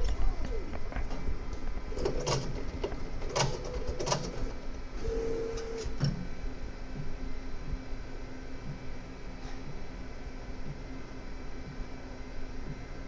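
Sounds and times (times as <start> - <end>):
three d printer running: 0.0 - 7.4
sharp printer clicks: 1.9 - 6.2.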